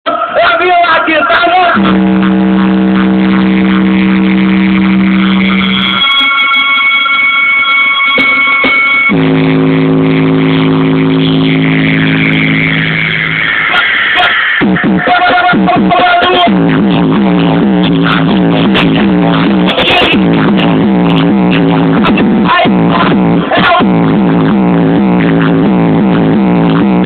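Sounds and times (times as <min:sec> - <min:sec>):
loud electronic music: 0:00.1 - 0:27.0
low buzzy synth note: 0:01.8 - 0:06.9, 0:08.0 - 0:13.8, 0:16.5 - 0:27.0
falling high synth sweep: 0:01.8 - 0:15.1.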